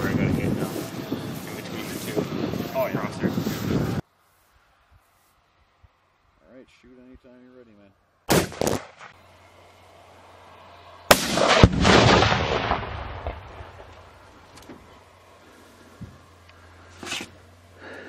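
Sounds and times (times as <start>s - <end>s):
rifle shot cracks: 8.3s - 9.2s, 11.1s - 14.0s
explosion boom rolling away: 11.1s - 14.0s.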